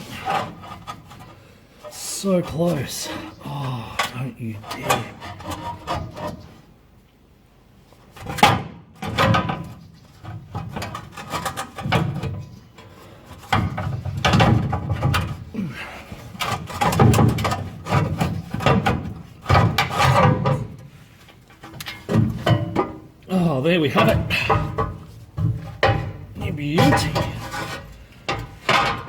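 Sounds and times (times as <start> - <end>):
metal plate scraping underbody: 0.0 - 3.4, 4.6 - 6.7, 9.0 - 23.0, 24.0 - 29.0.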